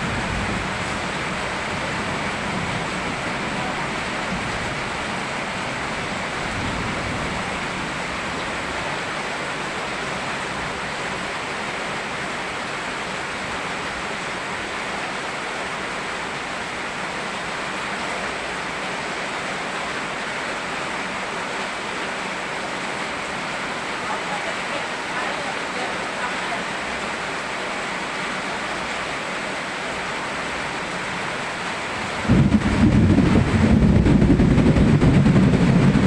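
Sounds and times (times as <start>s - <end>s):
steady rain: 0.0s - 36.0s
river flowing: 7.3s - 33.6s.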